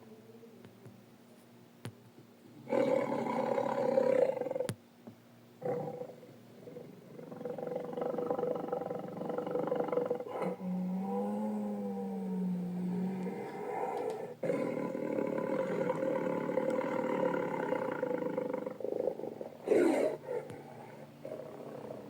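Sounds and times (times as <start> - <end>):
tiger growling and roaring: 2.6 - 4.7, 5.6 - 22.0
tiger yowl: 7.2 - 22.0.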